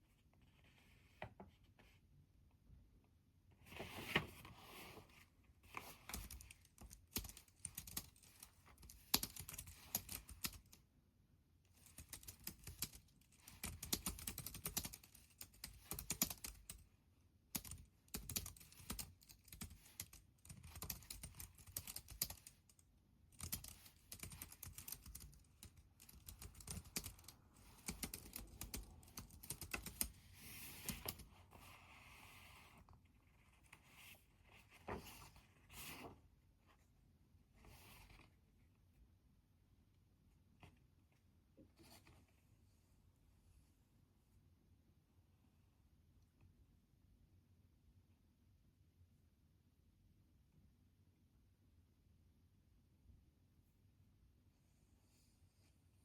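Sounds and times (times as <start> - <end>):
keyboard typing: 6.1 - 10.8, 11.8 - 16.8, 17.5 - 30.2.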